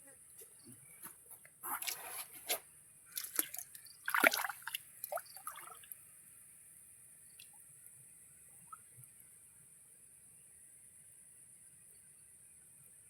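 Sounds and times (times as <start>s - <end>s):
water splashing and dripping: 1.7s - 6.0s.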